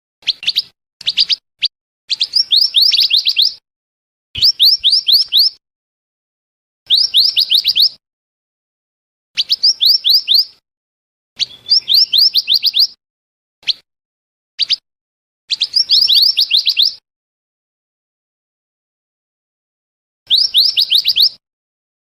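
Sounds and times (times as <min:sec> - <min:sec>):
bird whistling rising notes: 0:00.2 - 0:03.6, 0:04.4 - 0:05.6, 0:06.9 - 0:08.0, 0:09.4 - 0:10.6, 0:11.4 - 0:13.0, 0:15.5 - 0:17.0, 0:20.3 - 0:21.4.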